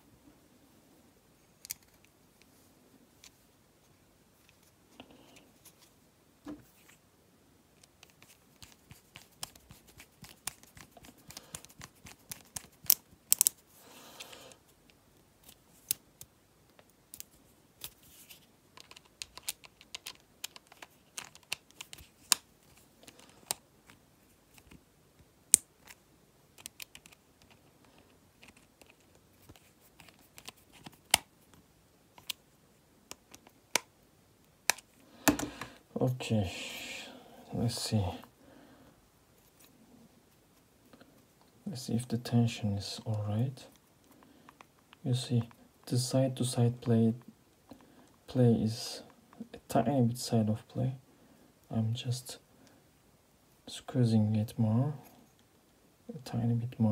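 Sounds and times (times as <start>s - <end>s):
screwdriver handled: 18.8s - 24.0s.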